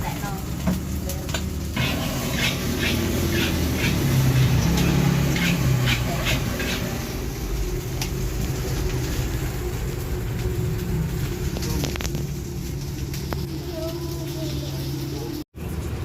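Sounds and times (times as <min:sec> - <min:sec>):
pitched hum: 0:01.6 - 0:15.3
metal spatula scraping a wok: 0:01.8 - 0:07.4.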